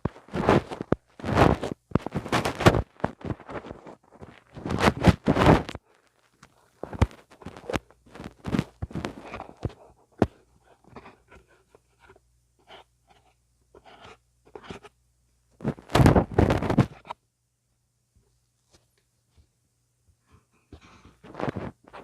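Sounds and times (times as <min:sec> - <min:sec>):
tool scratching on microphone: 0:00.0 - 0:05.8.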